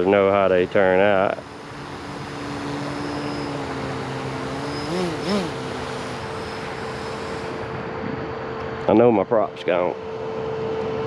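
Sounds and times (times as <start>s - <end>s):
hissing windy background: 0.0s - 11.0s
small motor humming: 0.7s - 8.2s.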